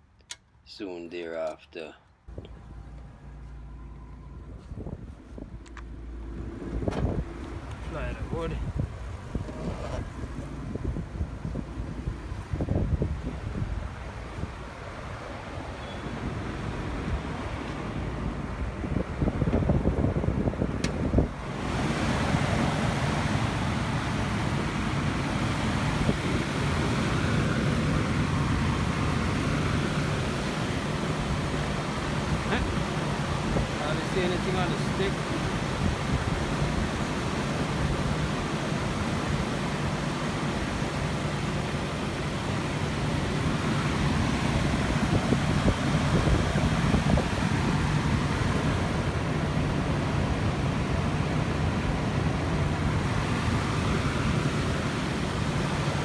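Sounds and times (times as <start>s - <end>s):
car engine idling: 2.3s - 56.0s
steady rushing noise: 5.4s - 15.7s.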